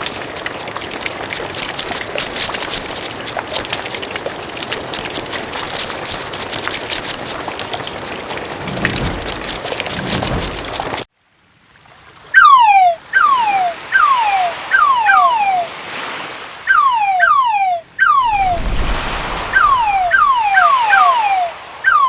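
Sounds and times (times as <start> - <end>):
low thumps: 8.6 - 11.0.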